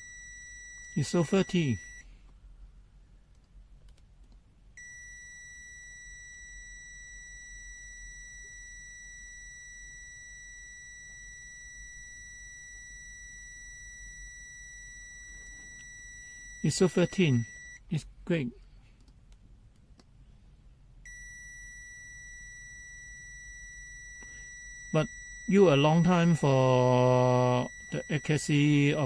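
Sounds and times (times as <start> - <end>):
multimeter continuity beep: 0.0 - 2.1, 4.8 - 17.9, 21.0 - 29.0.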